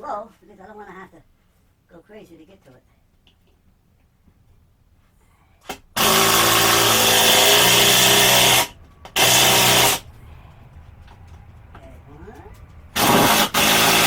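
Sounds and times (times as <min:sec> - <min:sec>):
power drill running: 0:05.7 - 0:10.2, 0:12.9 - 0:14.0.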